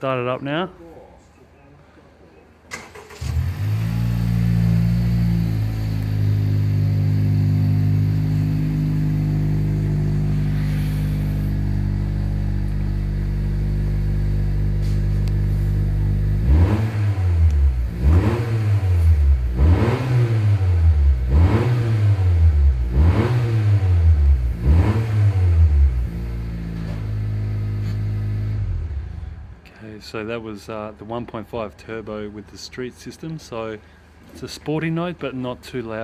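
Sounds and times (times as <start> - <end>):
car engine idling: 2.9 - 21.6
car engine revving: 2.9 - 29.4.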